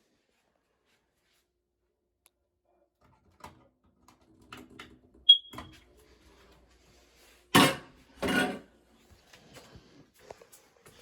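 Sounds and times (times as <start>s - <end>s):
smoke alarm beep: 5.3s - 5.7s.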